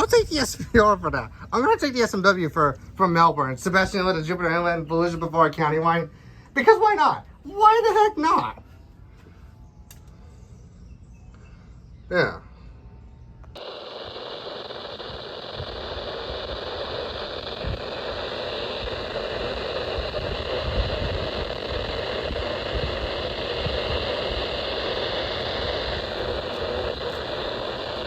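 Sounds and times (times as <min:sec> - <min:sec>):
low rumble: 0:12.8 - 0:28.0
radio static hiss: 0:13.5 - 0:28.0.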